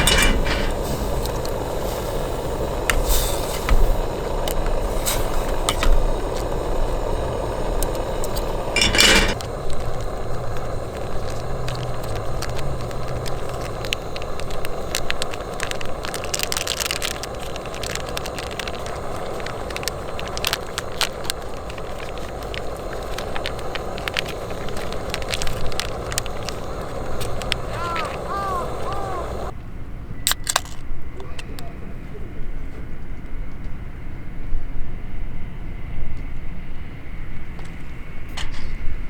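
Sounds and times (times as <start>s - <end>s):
campfire crackling and popping: 0.0s - 29.5s.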